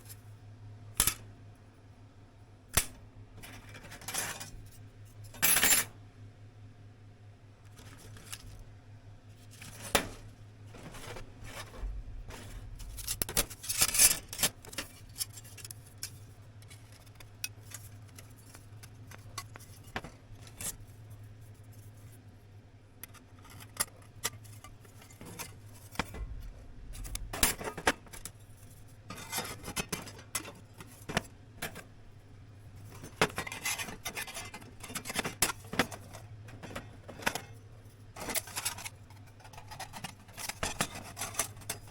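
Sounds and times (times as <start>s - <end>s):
steady low hum: 0.0s - 41.9s
metal pieces clinking and scraping: 12.4s - 17.1s.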